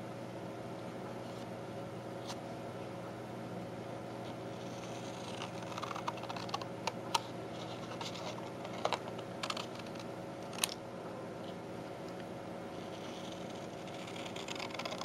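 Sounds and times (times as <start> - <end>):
steady low hum: 0.0 - 15.0
scissors cutting thick paper: 12.8 - 15.0.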